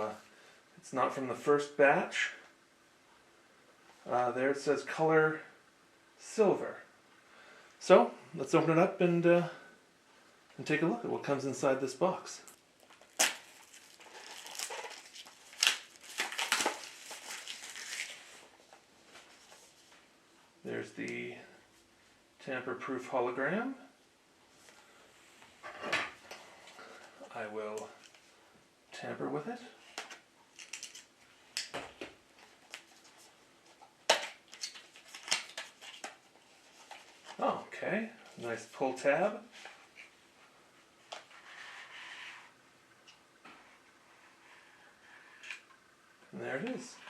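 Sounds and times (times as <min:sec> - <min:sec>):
packaging rustling and crinkling: 0:12.5 - 0:19.8, 0:30.5 - 0:31.7, 0:32.3 - 0:37.4.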